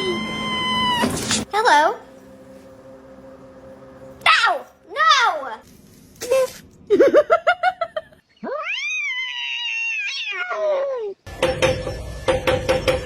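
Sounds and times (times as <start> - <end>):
cat yowling: 0.0 - 1.3, 8.4 - 11.2.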